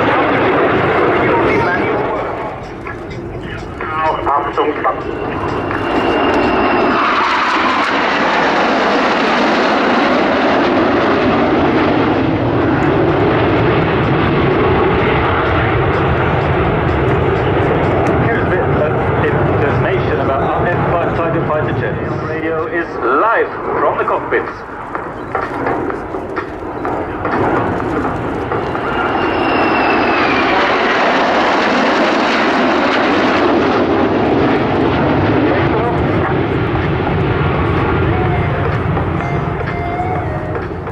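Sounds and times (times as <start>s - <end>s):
aircraft engines roaring: 0.0s - 40.9s
high whine falling in pitch: 1.1s - 9.2s, 25.9s - 31.9s.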